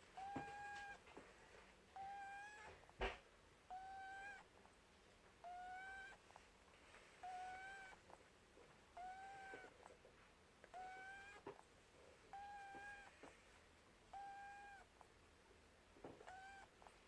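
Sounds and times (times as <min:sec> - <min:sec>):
rabbit snoring: 0:00.0 - 0:01.1, 0:02.0 - 0:04.5, 0:05.4 - 0:10.1, 0:10.7 - 0:13.5, 0:14.1 - 0:15.0, 0:16.1 - 0:17.0.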